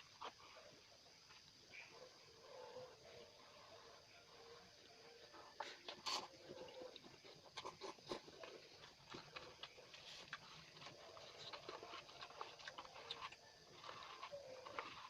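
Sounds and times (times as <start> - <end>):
chewing clicks: 5.5 - 15.0.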